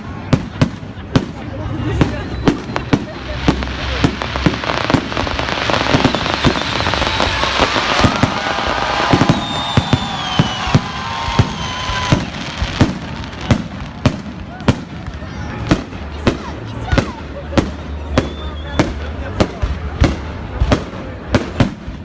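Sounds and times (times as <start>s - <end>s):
firework bangs: 0.0s - 22.0s
firework crackling: 0.0s - 22.0s
falling whistles: 5.8s - 12.6s, 17.8s - 18.8s.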